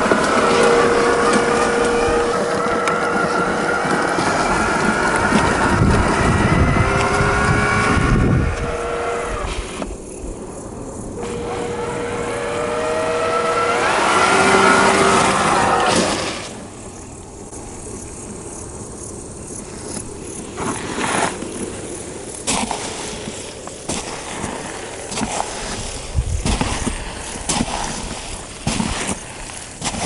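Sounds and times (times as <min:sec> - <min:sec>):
electric motor whine: 0:00.0 - 0:10.1, 0:11.2 - 0:16.8
coarse rumble: 0:00.0 - 0:30.0.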